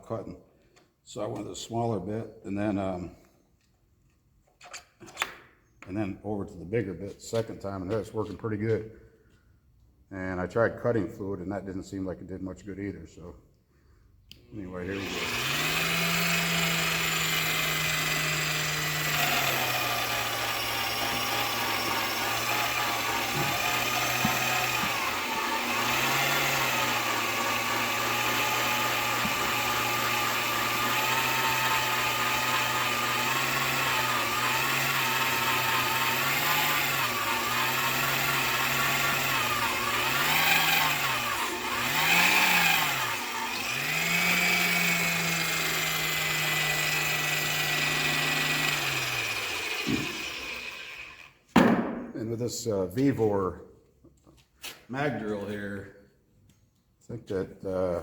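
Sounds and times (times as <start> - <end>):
drill press drilling steel: 14.8 - 51.4.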